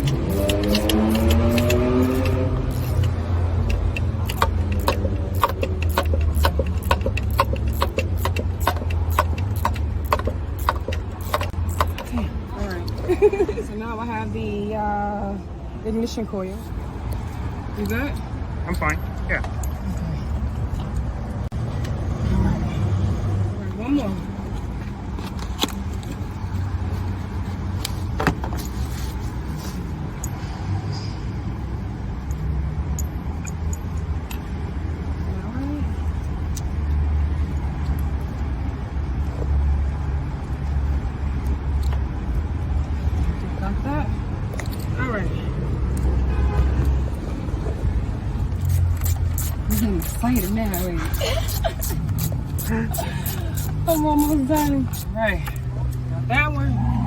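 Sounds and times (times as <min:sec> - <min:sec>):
ratchet wrench clicking: 0:00.0 - 0:12.2, 0:32.2 - 0:34.5, 0:48.5 - 0:56.1
passing traffic rumble: 0:00.0 - 0:57.0.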